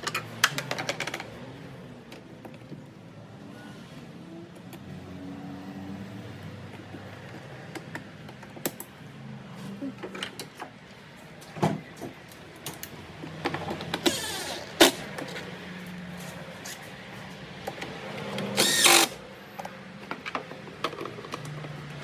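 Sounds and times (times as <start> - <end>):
hand tools clicking and knocking: 0.0 - 1.5, 11.6 - 15.5, 17.6 - 22.0.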